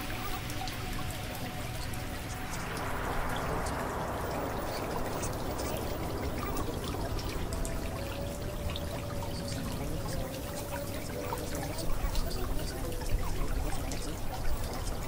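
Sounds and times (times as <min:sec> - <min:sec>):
steady low hum: 0:00.0 - 0:15.0
water pouring and trickling: 0:00.0 - 0:15.0.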